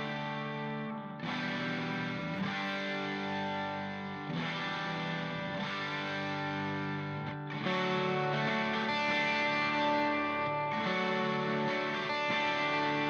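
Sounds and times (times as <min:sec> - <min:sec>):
distorted electric guitar: 0:00.0 - 0:13.0.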